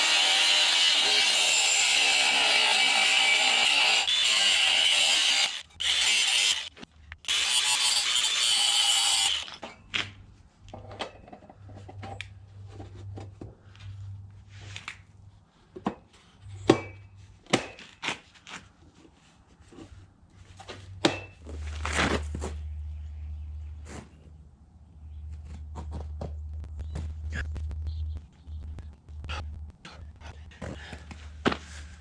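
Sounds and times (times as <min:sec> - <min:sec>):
tools knocking and scraping: 0:10.7 - 0:13.5.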